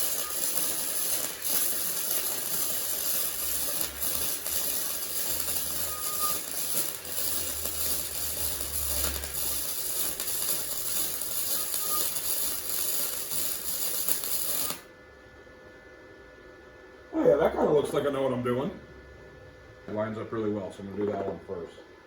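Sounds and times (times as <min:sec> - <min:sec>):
welding arc crackling: 0:00.0 - 0:14.9.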